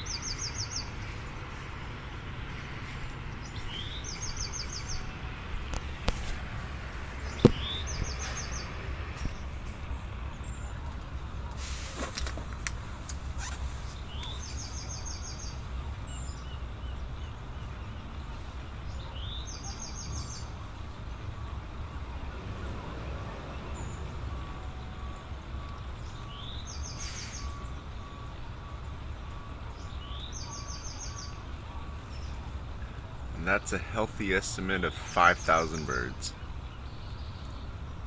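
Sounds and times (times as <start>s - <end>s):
bird calling: 0.0s - 6.4s, 7.1s - 8.8s.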